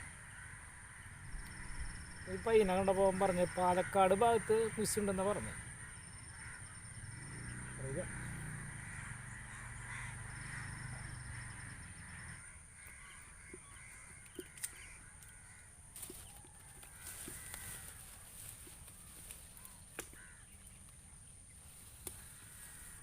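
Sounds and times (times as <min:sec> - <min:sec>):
birds calling: 0:00.0 - 0:23.0
light clicks: 0:13.5 - 0:15.4.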